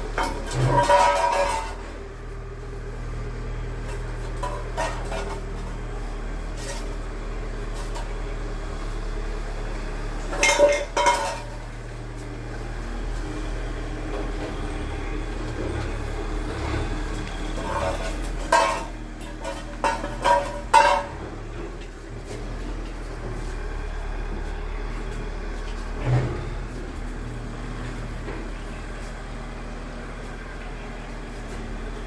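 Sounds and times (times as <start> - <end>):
metal bowl clattering on floor: 0.2 - 1.9, 4.4 - 5.5, 10.3 - 11.6, 17.6 - 21.2.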